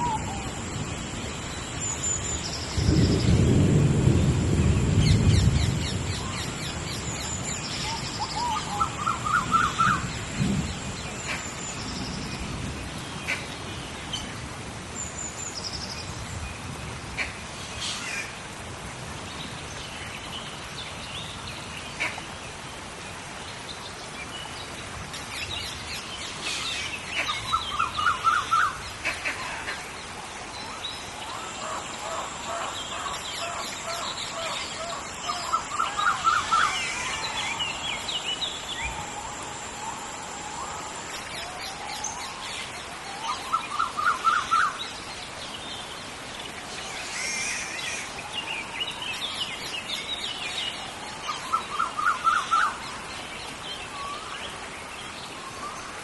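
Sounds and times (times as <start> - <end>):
steady rain: 0.0 - 56.0
thunder rumble: 2.6 - 8.0, 9.5 - 13.2
birds calling: 24.4 - 56.0.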